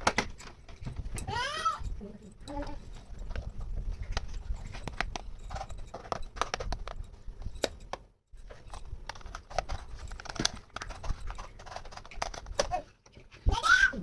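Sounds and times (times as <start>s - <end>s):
plastic toy pieces clicking: 8.7s - 12.8s.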